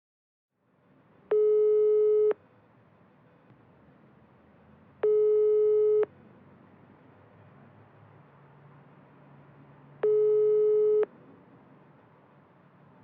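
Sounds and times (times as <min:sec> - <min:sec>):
phone ringback tone: 0:05.0 - 0:06.1, 0:10.0 - 0:11.1.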